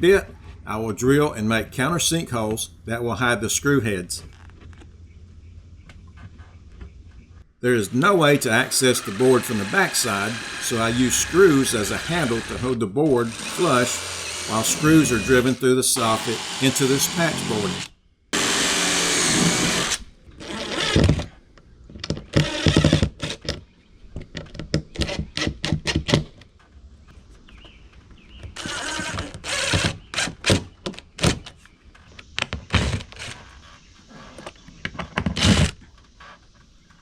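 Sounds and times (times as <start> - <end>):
impact driver driving screws: 7.9 - 21.2.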